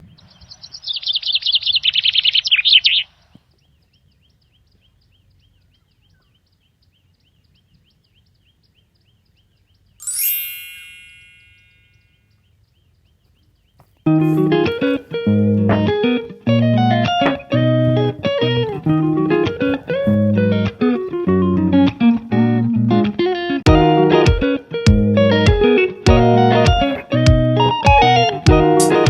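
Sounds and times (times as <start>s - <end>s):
bird warbling: 0.0s - 3.4s
faint bird chirps: 0.0s - 10.3s
bright chime: 10.0s - 12.3s
guitar music: 14.1s - 29.0s.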